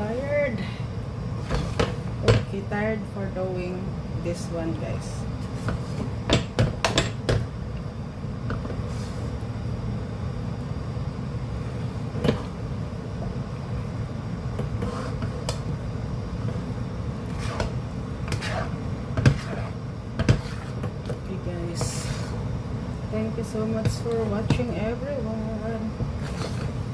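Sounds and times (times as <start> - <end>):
steady low hum: 0.0 - 26.9
spoon stirring and scraping a pan: 14.6 - 15.4, 17.2 - 22.4, 26.2 - 26.8.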